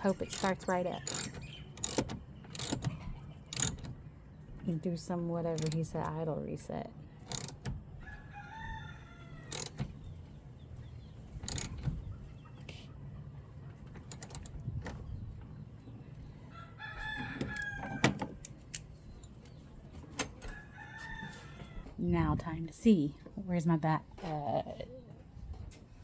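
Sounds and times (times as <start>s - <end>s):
sharp clicks and knocks: 0.0s - 4.1s, 5.5s - 6.2s, 7.2s - 7.9s, 9.5s - 10.1s, 11.3s - 12.1s, 13.8s - 15.0s
rooster crowing: 8.0s - 9.7s, 16.5s - 18.2s, 20.5s - 21.9s.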